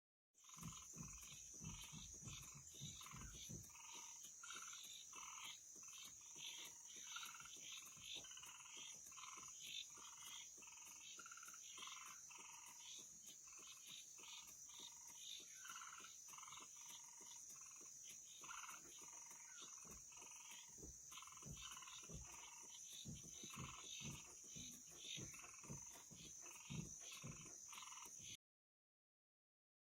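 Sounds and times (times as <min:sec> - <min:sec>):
frogs calling: 0:00.4 - 0:28.4.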